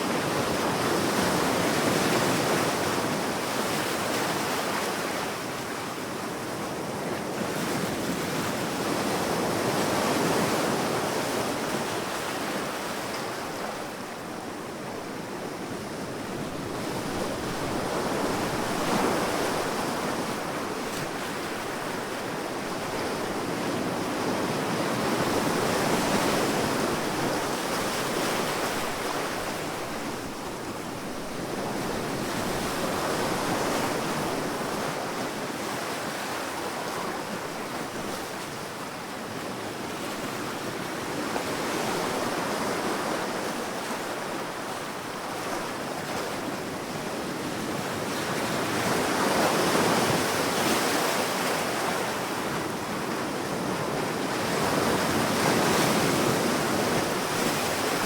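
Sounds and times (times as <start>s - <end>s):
sea waves breaking on beach: 6.8s - 58.0s.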